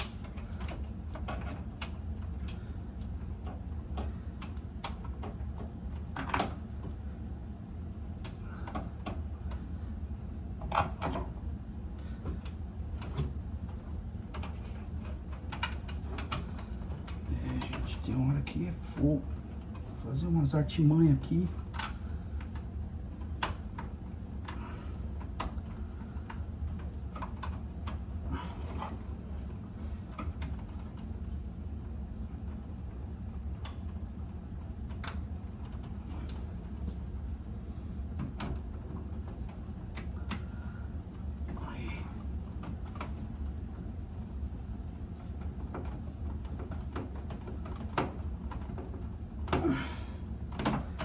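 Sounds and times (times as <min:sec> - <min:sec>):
clicks and taps on wiring: 0:00.0 - 0:07.0, 0:12.0 - 0:18.2, 0:21.5 - 0:24.6, 0:25.2 - 0:28.1, 0:34.8 - 0:37.0
steady low hum: 0:00.0 - 0:51.0.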